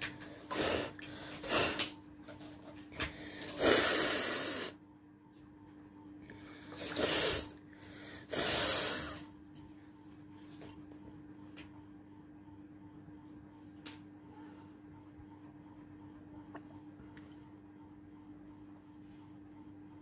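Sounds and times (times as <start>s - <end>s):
person snorting air through nose: 3.6s - 4.8s, 6.8s - 7.6s, 8.3s - 9.3s.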